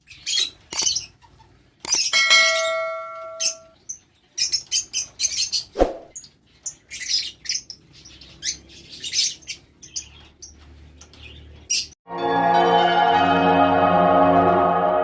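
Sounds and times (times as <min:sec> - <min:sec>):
lovebirds chirping: 0:00.0 - 0:12.0.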